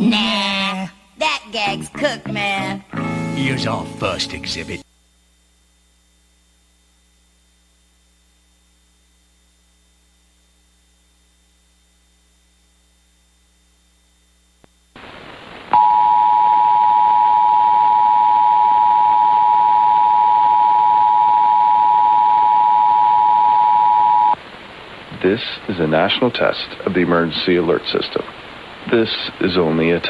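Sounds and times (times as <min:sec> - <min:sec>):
faint hum: 0:00.0 - 0:30.0
static hiss: 0:03.2 - 0:30.0
two-tone emergency alert signal: 0:15.8 - 0:24.4.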